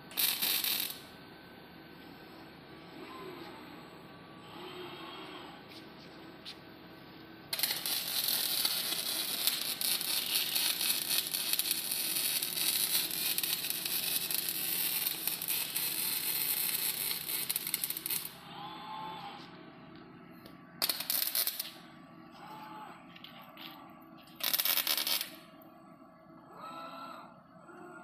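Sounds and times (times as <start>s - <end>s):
low machine hum: 0.0s - 28.0s
welding arc crackling: 0.1s - 1.1s, 7.5s - 18.4s, 20.8s - 21.8s, 24.2s - 25.4s.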